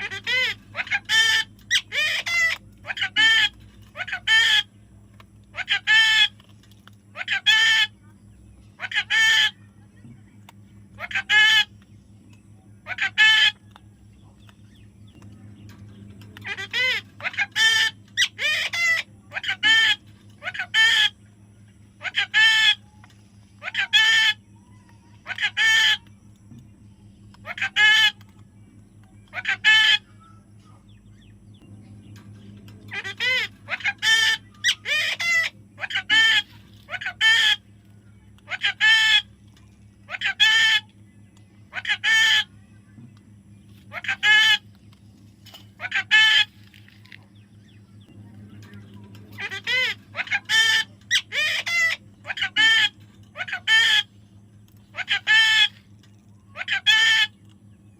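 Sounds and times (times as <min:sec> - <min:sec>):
parrot calling: 0:00.0 - 0:04.8, 0:05.5 - 0:08.0, 0:08.7 - 0:09.8, 0:10.8 - 0:11.8, 0:12.4 - 0:43.0, 0:43.7 - 0:44.9, 0:45.5 - 0:57.6
low steady hum: 0:00.0 - 0:57.9.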